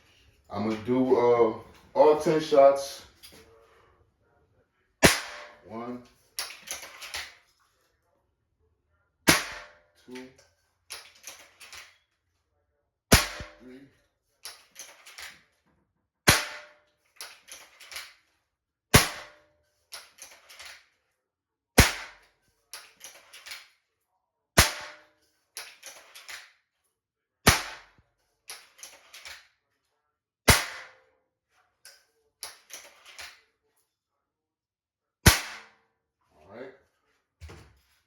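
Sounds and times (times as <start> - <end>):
air rifle shots: 5.0 - 5.6, 9.3 - 9.8, 13.1 - 13.7, 16.3 - 16.7, 19.0 - 19.4, 21.8 - 22.2, 24.6 - 25.0, 27.5 - 27.9, 30.5 - 30.9, 35.3 - 35.7.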